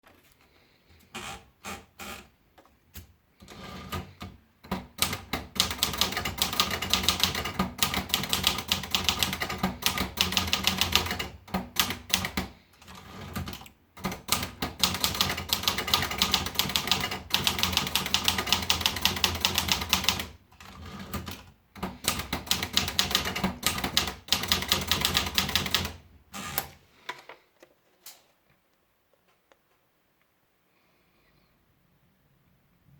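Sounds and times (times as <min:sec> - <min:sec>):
typewriter keystrokes: 0:03.5 - 0:26.7.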